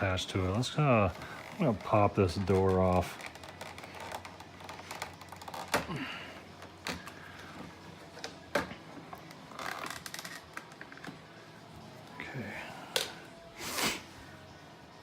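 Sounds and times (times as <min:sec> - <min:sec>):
plastic parts clicking and knocking: 0:06.6 - 0:07.2.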